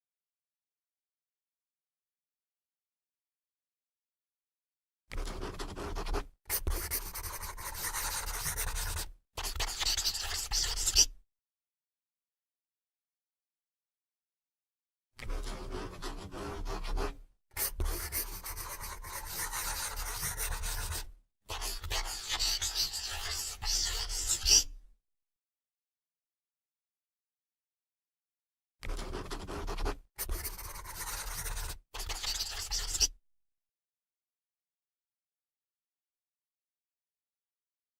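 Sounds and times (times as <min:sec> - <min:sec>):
pen scratching on paper: 0:05.1 - 0:11.2, 0:15.2 - 0:24.7, 0:28.8 - 0:33.2.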